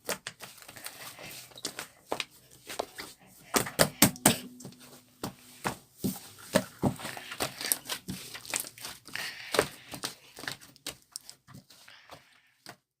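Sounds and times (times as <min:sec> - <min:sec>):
hands squishing slime: 0:06.2 - 0:12.8.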